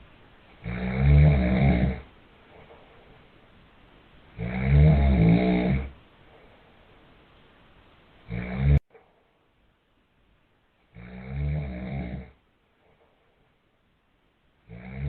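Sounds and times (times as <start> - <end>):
man snoring: 0.6 - 2.0, 4.4 - 5.9, 8.3 - 8.8, 11.0 - 12.4, 14.7 - 15.0.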